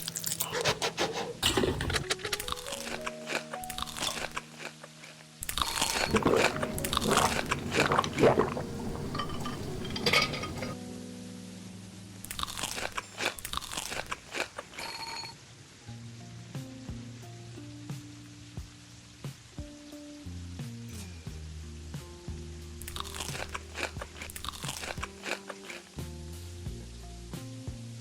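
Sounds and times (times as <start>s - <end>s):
person chewing crisp food: 0.0s - 10.8s, 12.3s - 14.9s, 22.8s - 25.9s
soft background music: 0.0s - 14.6s, 15.7s - 28.0s.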